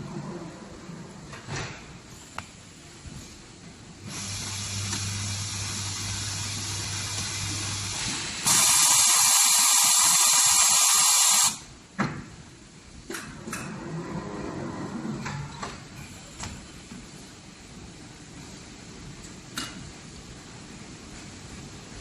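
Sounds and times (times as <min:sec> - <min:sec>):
welding machine electrical hum: 0:03.7 - 0:11.8
loud even hiss: 0:04.0 - 0:11.7.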